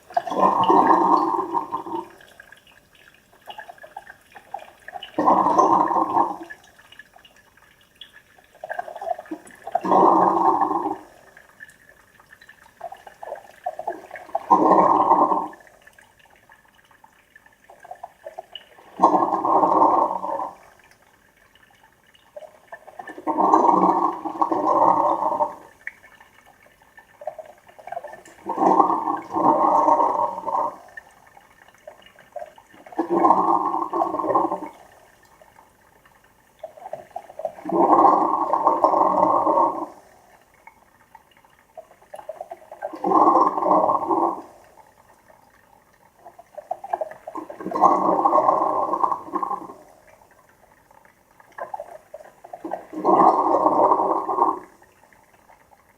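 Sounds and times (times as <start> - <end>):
coffee makers gurgling and sputtering: 0.0 - 2.1, 9.8 - 11.1, 23.2 - 25.7, 28.4 - 30.8, 37.6 - 39.9, 43.0 - 44.5, 47.4 - 49.8, 52.8 - 54.7.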